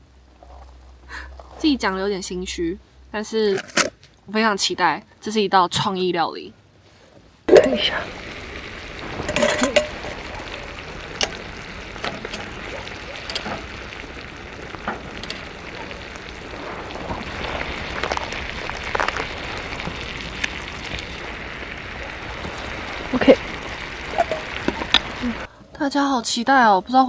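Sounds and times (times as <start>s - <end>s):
meat sizzling in a pan: 7.8s - 25.5s.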